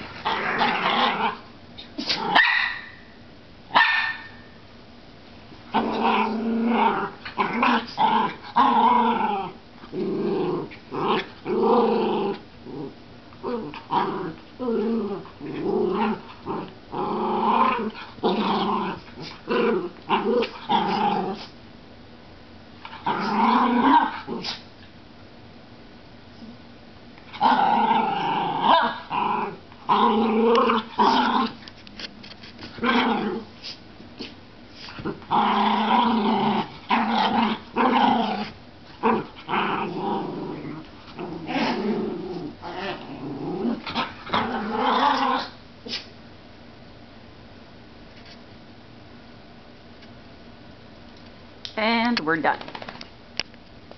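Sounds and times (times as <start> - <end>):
dogs play growling: 0.0 - 2.4, 5.5 - 21.6, 22.8 - 24.8, 26.4 - 46.2.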